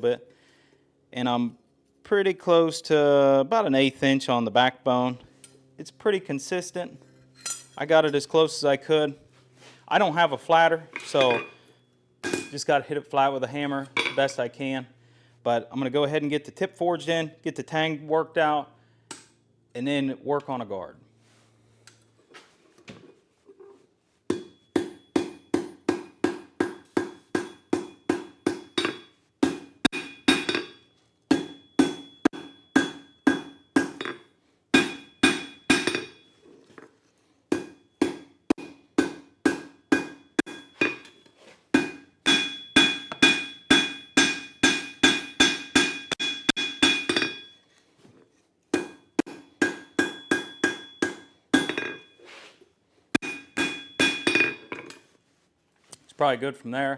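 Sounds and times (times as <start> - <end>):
hammer ringing on anvil: 11.0 - 12.7, 24.3 - 36.4, 37.5 - 47.7, 48.8 - 52.2, 53.2 - 54.7.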